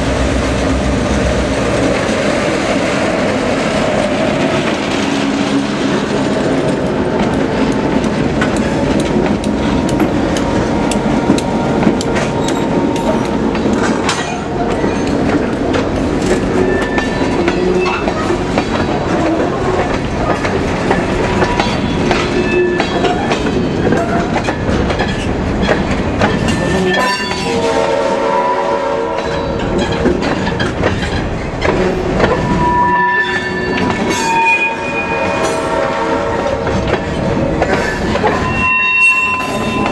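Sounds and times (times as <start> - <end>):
train wheels clacking: 0.0 - 28.0, 29.0 - 39.9
freight train rumbling: 0.0 - 39.9
train horn blast: 26.8 - 29.6, 32.5 - 36.8.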